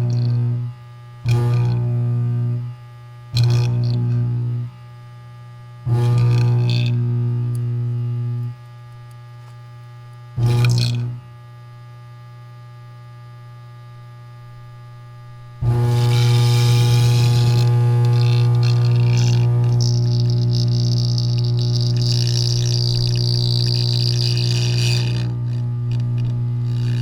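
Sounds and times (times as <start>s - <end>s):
carbon arc humming loudly: 0.0s - 27.0s
quiet hum: 0.0s - 27.0s.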